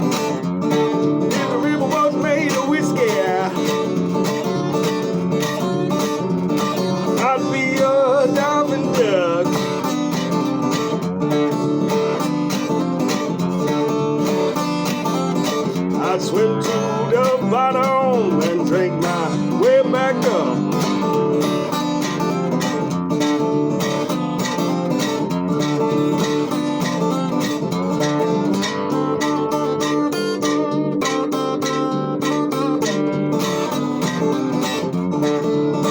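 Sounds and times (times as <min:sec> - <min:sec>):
bluegrass acoustic guitar picking: 0:00.0 - 0:35.9.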